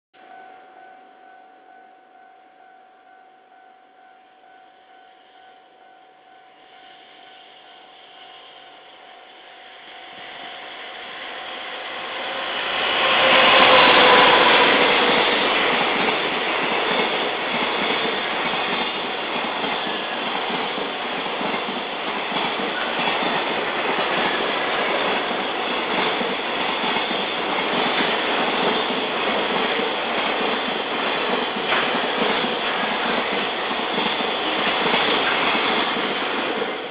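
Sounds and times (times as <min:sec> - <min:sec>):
level-crossing warning bell: 0:00.2 - 0:36.9
electric locomotive passing: 0:05.2 - 0:36.9
train wheels clacking over rail joints: 0:12.1 - 0:36.9.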